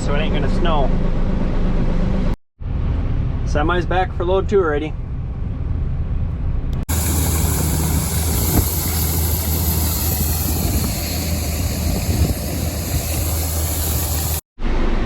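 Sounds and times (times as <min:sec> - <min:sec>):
diesel machinery engine hum: 0:00.0 - 0:03.5, 0:05.0 - 0:15.0
high even whine: 0:06.8 - 0:15.0.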